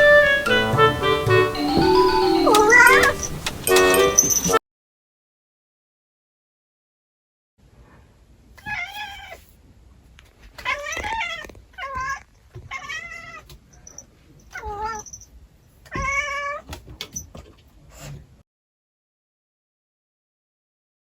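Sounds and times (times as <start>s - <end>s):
cat meowing: 2.1s - 3.4s, 8.6s - 9.4s, 10.6s - 13.5s, 14.6s - 15.1s, 15.9s - 16.7s.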